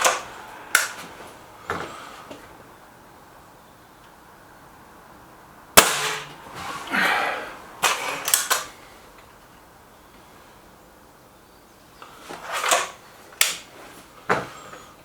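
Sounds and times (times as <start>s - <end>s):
air rifle cocking clicks: 0.0s - 1.0s, 7.9s - 8.8s, 12.6s - 13.7s.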